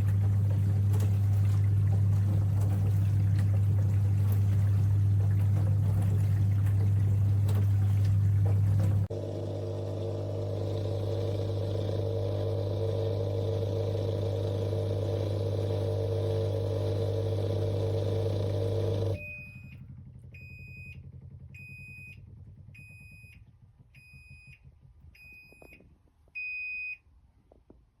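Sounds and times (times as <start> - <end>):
dishwasher humming: 0.0 - 19.3.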